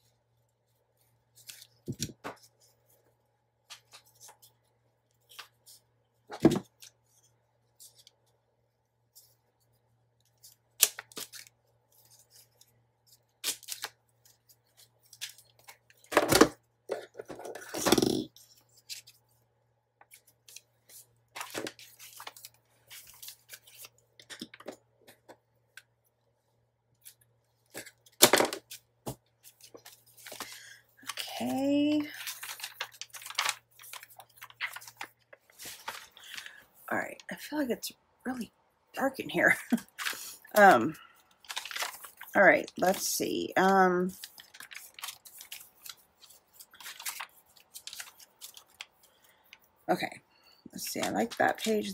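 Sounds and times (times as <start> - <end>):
paper rustling: 0.7 - 8.4, 20.0 - 25.8, 27.0 - 36.6, 39.7 - 49.7.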